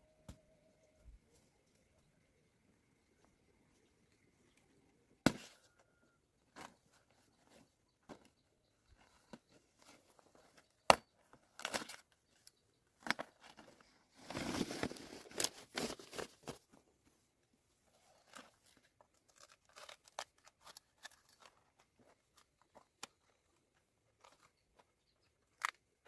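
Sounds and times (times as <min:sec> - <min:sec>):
rustling: 0:13.0 - 0:17.1.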